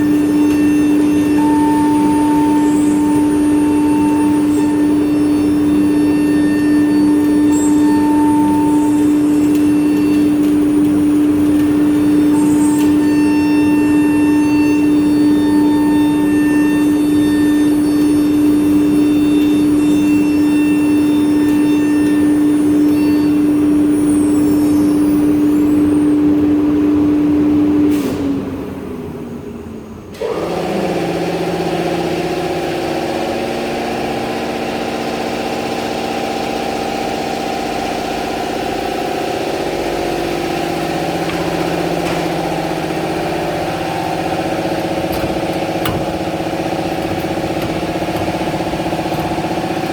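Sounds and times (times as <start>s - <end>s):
machine motor running: 0.0s - 21.3s, 38.2s - 49.9s
spindle motor humming: 0.0s - 26.1s, 38.6s - 49.9s.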